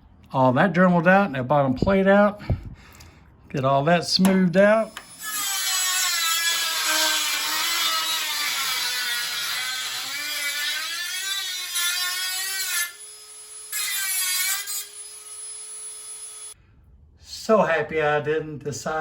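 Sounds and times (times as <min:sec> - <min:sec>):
rotary tool grinding sheet steel: 0:04.8 - 0:16.6.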